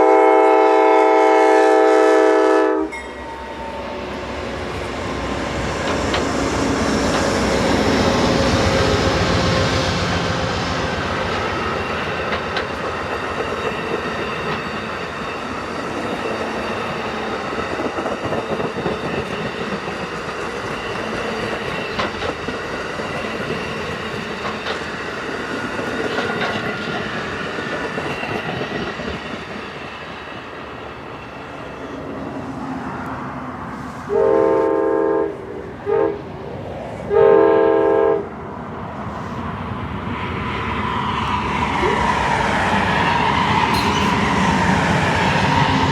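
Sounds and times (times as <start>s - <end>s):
locomotive air horn blasts: 0.0s - 3.0s, 34.1s - 36.2s, 37.1s - 38.3s
train rolling past: 0.0s - 45.9s.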